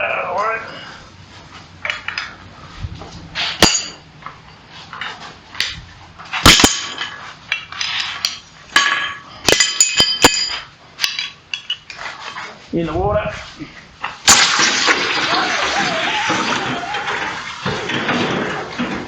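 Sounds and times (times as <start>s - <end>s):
steel clanking: 3.5s - 4.6s, 8.2s - 12.0s.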